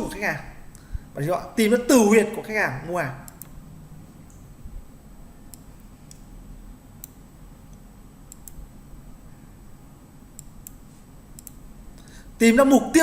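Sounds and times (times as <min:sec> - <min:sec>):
low hum: 0:00.0 - 0:12.9
faint sharp clicks: 0:11.4 - 0:11.6.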